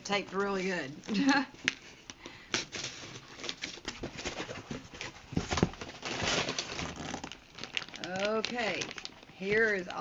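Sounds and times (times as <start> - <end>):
cardboard box being opened: 2.7 - 8.4.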